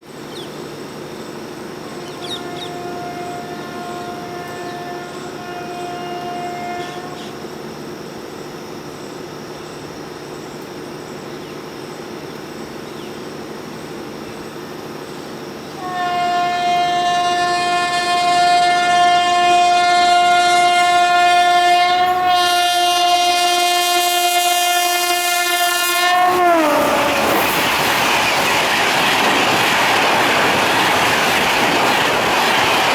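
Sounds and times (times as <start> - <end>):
train air horn blast: 1.9 - 7.5, 15.8 - 27.6
train rushing by: 12.1 - 32.9.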